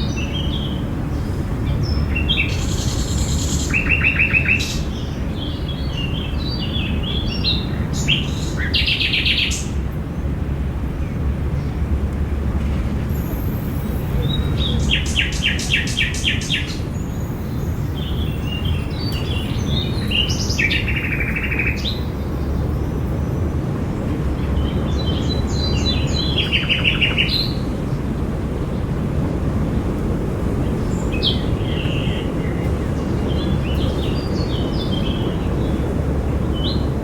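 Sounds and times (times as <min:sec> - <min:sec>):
songbirds chirping: 0:00.0 - 0:37.0.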